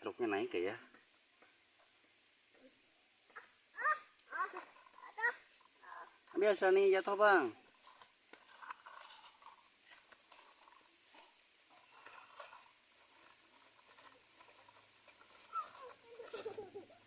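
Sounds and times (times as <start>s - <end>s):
toy trucks with stones clicking: 4.1s - 6.5s, 7.6s - 17.0s.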